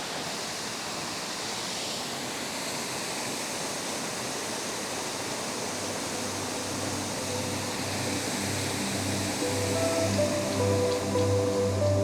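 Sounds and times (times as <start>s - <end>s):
waterfall rushing: 5.7s - 12.0s
faint background music: 6.5s - 12.0s.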